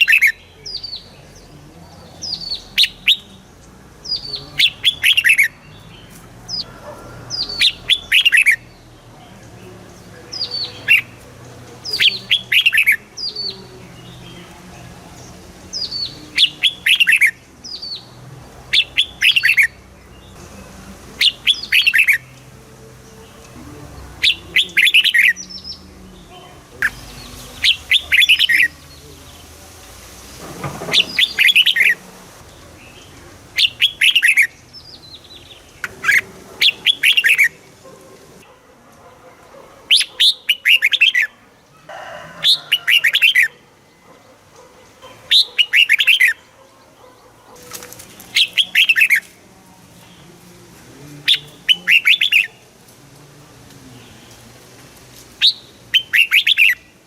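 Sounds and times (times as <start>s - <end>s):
bird singing whistled notes: 0.0s - 1.5s, 7.4s - 8.9s, 15.7s - 18.1s, 18.8s - 20.4s, 21.2s - 22.4s, 26.8s - 29.1s, 32.9s - 37.5s, 55.4s - 56.9s.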